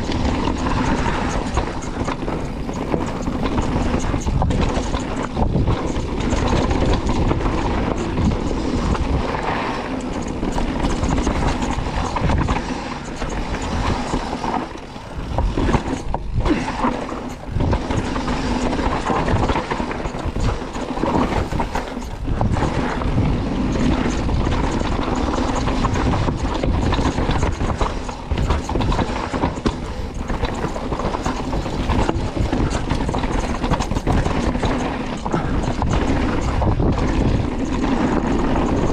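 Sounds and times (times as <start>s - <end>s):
bike rattling and knocking: 0.0s - 38.9s
bike tyres rolling rumble: 0.0s - 38.9s
wind: 0.0s - 38.9s.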